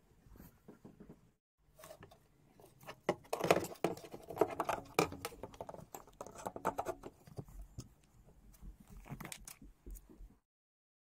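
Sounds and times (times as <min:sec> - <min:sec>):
hard objects clicking and knocking: 0:02.8 - 0:08.0.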